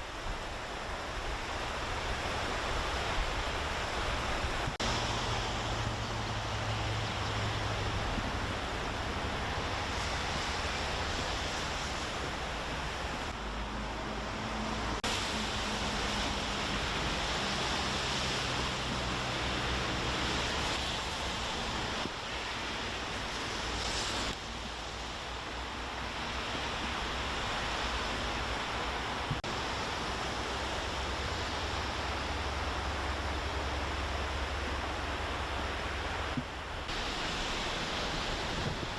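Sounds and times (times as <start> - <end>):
river rushing: 0.0 - 38.9.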